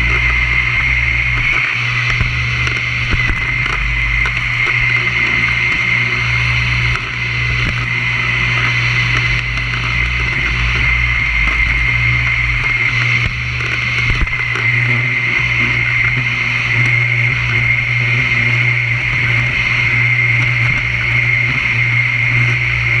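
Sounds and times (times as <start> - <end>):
vacuum cleaner running: 0.0 - 23.0.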